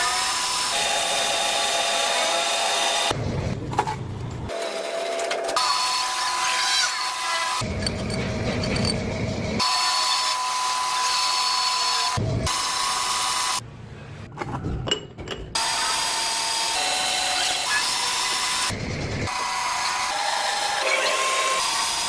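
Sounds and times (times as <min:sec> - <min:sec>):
metal lathe whining and cutting: 0:15.6 - 0:22.0.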